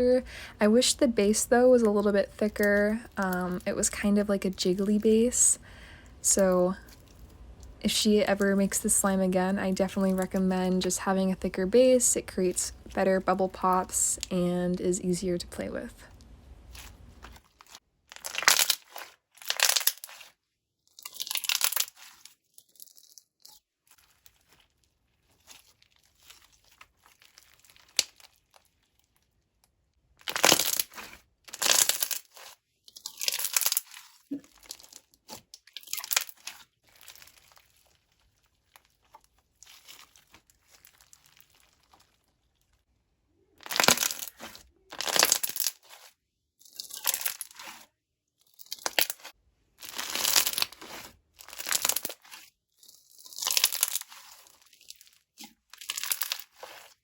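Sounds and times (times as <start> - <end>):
slime beads crackling and crunching: 16.6 - 29.3, 30.2 - 42.8, 43.6 - 57.0.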